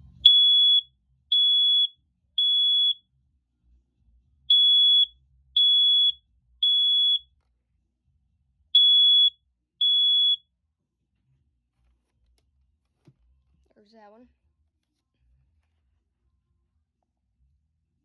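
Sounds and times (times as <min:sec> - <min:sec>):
smoke alarm beeping: 0:00.2 - 0:03.0, 0:04.5 - 0:07.2, 0:08.8 - 0:10.4.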